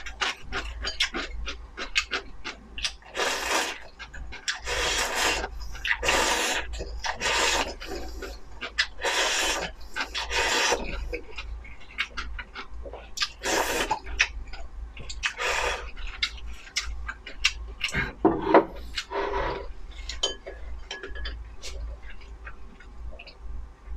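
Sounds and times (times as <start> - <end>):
wet chewing clicks: 0.0 - 18.1, 21.3 - 23.4
slurping noodles: 3.1 - 3.8, 4.5 - 11.0, 13.3 - 14.0.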